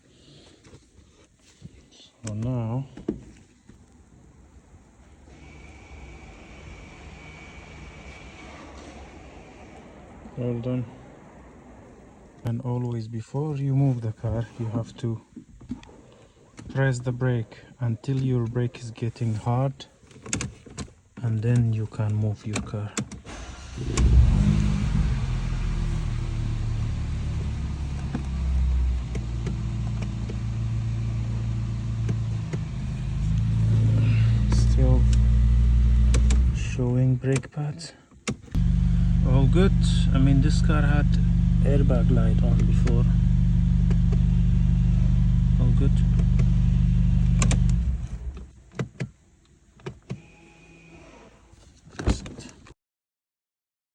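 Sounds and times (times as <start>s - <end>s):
car engine starting and idling: 4.9s - 12.5s, 23.2s - 37.2s, 38.2s - 48.6s.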